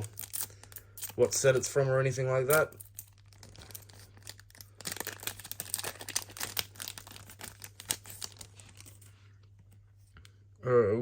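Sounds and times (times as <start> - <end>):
wrapper crinkling and tearing: 0.0 - 1.8, 2.4 - 9.1.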